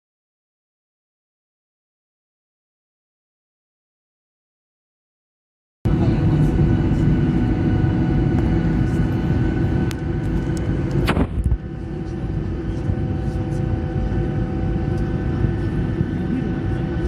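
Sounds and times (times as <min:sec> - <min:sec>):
jet airliner rumble and whine: 0:05.9 - 0:17.0.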